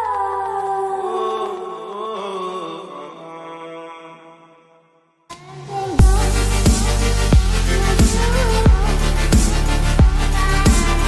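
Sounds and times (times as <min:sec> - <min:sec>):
electronic music track: 0:05.3 - 0:11.0
song playing: 0:05.3 - 0:11.0.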